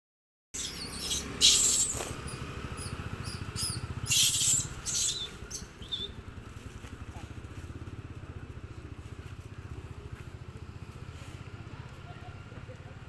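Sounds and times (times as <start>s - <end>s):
monkey squealing: 0.6s - 6.1s.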